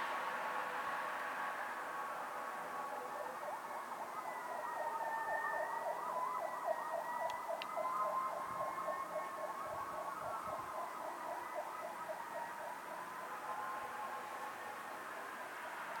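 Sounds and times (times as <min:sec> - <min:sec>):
fire truck siren yelp: 0:00.0 - 0:16.0
steady wailing siren tone: 0:00.0 - 0:16.0.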